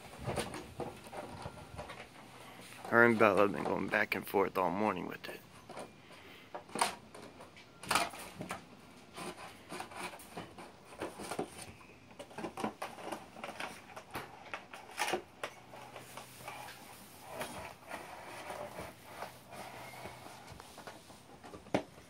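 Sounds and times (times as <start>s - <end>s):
plastic crate scraping on floor: 14.8s - 21.8s.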